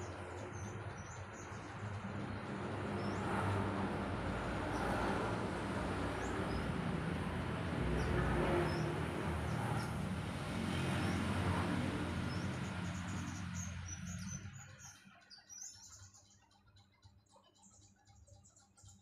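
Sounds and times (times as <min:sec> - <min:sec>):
traffic rumble: 0:00.0 - 0:14.9
small birds chirping: 0:00.0 - 0:19.0.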